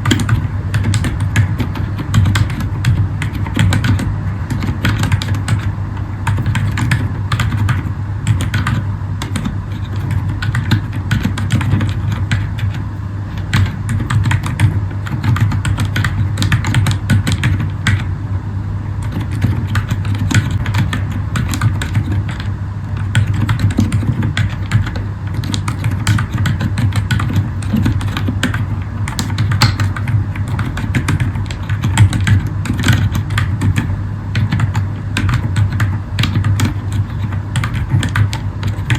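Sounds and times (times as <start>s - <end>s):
muted mechanical keyboard typing: 0.0s - 18.1s, 19.0s - 38.9s.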